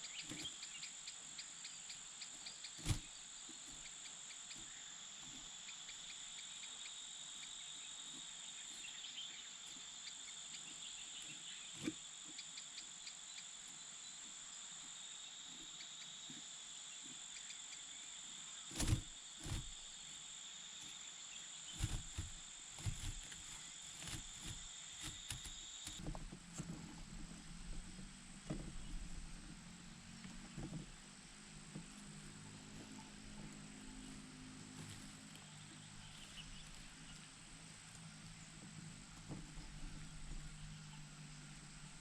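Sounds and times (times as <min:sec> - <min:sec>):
insects chirring: 0:00.0 - 0:42.0
soft thumps and knocks: 0:02.8 - 0:03.1, 0:18.7 - 0:19.9, 0:21.8 - 0:29.6, 0:30.2 - 0:31.1.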